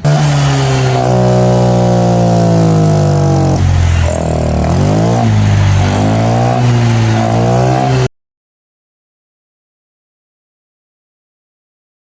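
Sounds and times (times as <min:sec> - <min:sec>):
scooter engine revving: 0:00.0 - 0:08.1.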